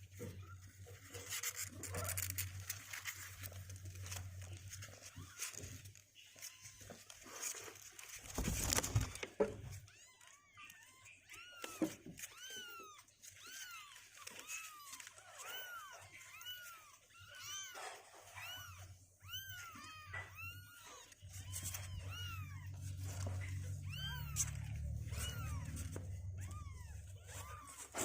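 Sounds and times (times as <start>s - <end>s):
kittens mewing: 0.1s - 28.0s
low steady rumble: 20.4s - 27.9s.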